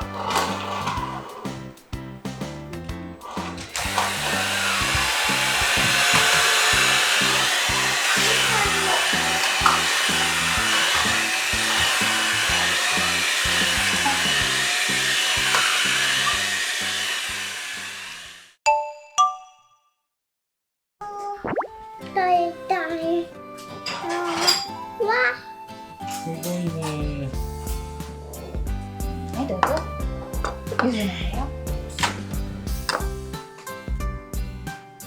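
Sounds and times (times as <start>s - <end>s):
background music with low notes: 0.0s - 17.6s, 21.5s - 35.0s
loud whirring motor: 3.3s - 18.6s.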